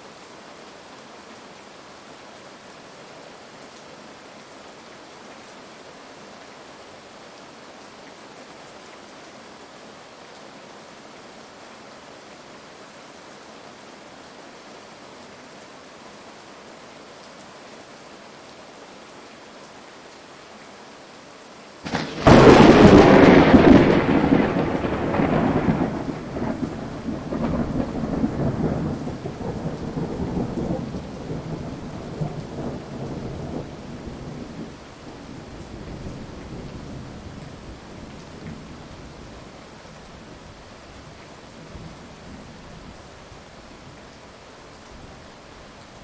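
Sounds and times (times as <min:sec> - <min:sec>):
heavy rain hissing: 0:21.8 - 0:46.0
thunderclap with rolling rumble: 0:21.9 - 0:34.7.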